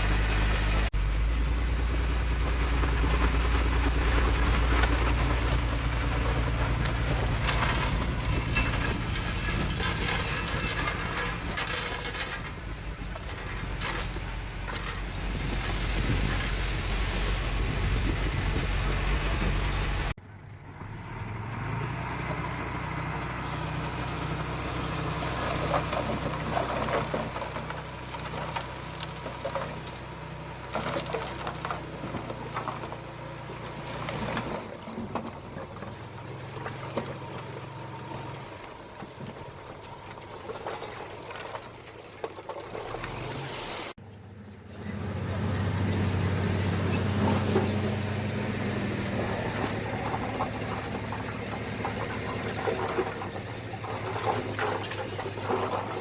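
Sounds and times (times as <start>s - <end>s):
heavy machinery diesel engine: 0.0s - 41.8s, 42.8s - 56.0s
metal clanks and rattles: 4.2s - 16.6s, 17.9s - 20.2s, 45.8s - 56.0s.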